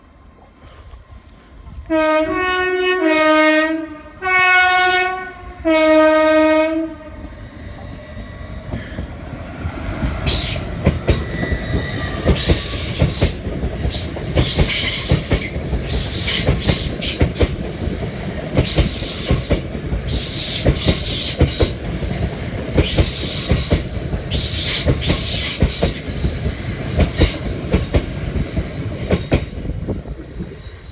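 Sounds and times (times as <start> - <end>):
train rumble: 0.0 - 30.9
train horn: 1.8 - 7.4
high-pitched squeals: 7.0 - 19.5.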